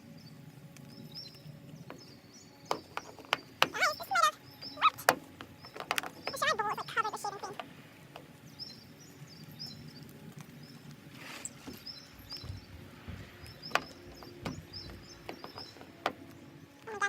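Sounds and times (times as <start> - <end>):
small bird chirping: 0.2 - 7.7, 8.3 - 17.0
handling noise: 10.0 - 16.8.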